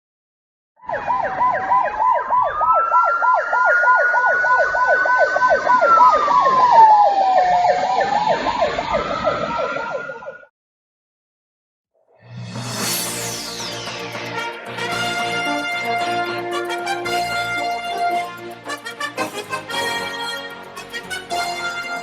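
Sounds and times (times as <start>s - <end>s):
siren fast yelp: 0.8s - 10.5s
siren slow wail: 0.8s - 10.5s.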